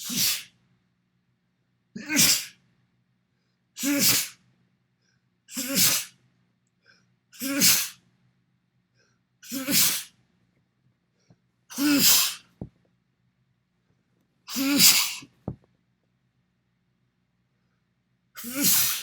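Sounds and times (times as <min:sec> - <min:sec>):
person sneezing: 0:00.0 - 0:00.5, 0:02.0 - 0:02.6, 0:03.8 - 0:04.4, 0:05.5 - 0:06.2, 0:07.4 - 0:08.0, 0:09.4 - 0:10.1, 0:11.7 - 0:12.6, 0:14.5 - 0:15.5, 0:18.4 - 0:19.0.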